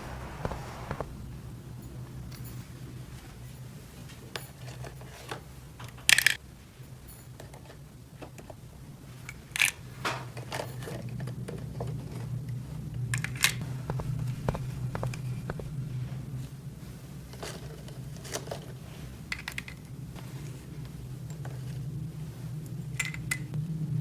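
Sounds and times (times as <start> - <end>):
low hum: 0.0 - 2.0, 13.6 - 16.1.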